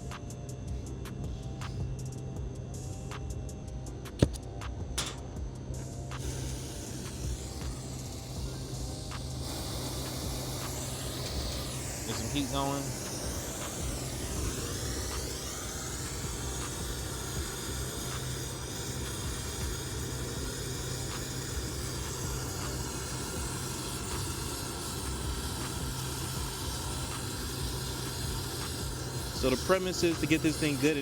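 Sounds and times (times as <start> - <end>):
steady low hum: 0.0 - 31.0
torch flame hissing: 0.0 - 31.0.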